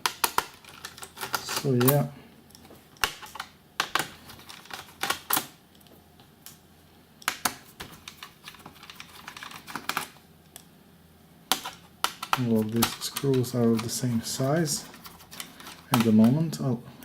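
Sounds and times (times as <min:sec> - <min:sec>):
plastic laptop case clicks: 0:11.5 - 0:13.9.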